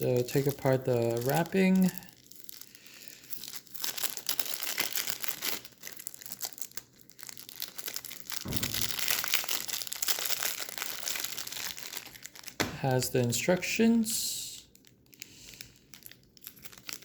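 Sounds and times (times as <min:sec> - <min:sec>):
plastic wrap crinkling: 0:00.0 - 0:17.0.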